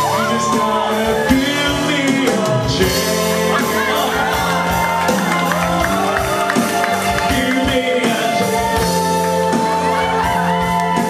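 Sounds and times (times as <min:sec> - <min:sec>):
drums beating: 0:00.0 - 0:11.0
live band playing pop-rock: 0:00.0 - 0:11.0.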